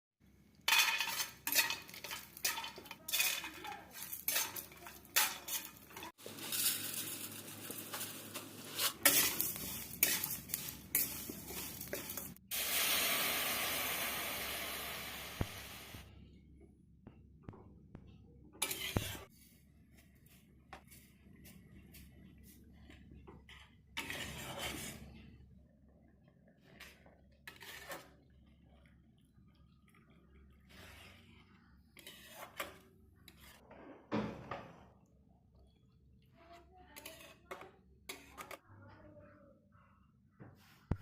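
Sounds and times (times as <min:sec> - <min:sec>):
spoon scraping a pan: 0:00.7 - 0:12.4, 0:18.6 - 0:19.3, 0:21.9 - 0:25.3, 0:26.7 - 0:28.2, 0:30.6 - 0:33.7, 0:36.9 - 0:38.6
loud sizzle: 0:06.2 - 0:16.1.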